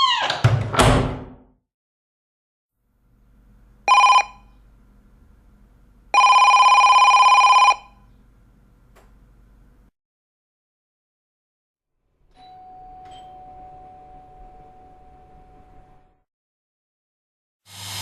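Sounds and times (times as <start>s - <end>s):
telephone bell ringing: 3.9s - 4.5s, 6.1s - 8.0s, 12.4s - 15.5s.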